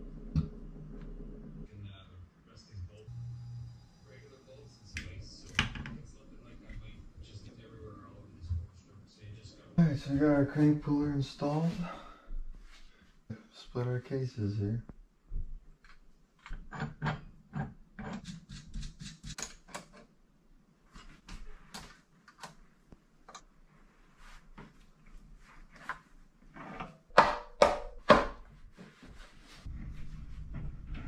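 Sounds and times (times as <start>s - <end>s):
tools clicking and knocking: 15.8s - 20.1s.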